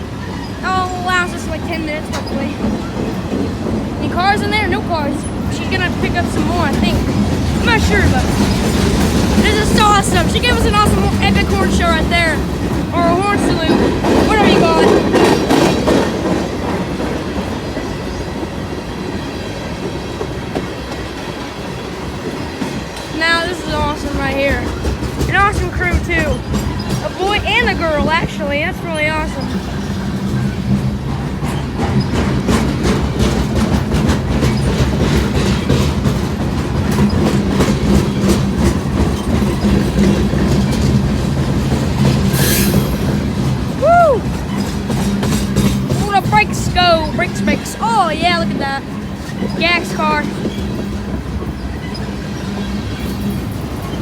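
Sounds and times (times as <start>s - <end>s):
train wheels on rails: 0.0s - 54.0s
brief hiss: 42.3s - 43.4s.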